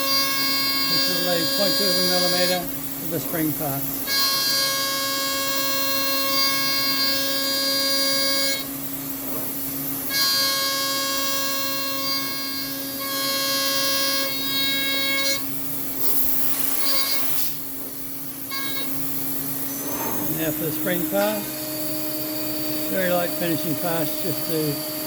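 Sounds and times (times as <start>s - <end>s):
router spindle whine: 0.0s - 8.7s, 10.1s - 15.6s, 18.2s - 25.0s
ringing metal cutting tone: 18.0s - 25.0s.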